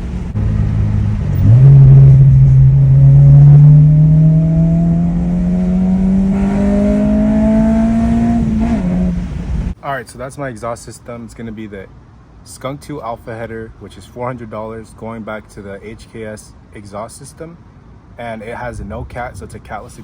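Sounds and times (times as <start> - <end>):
car engine accelerating: 0.0 - 9.8.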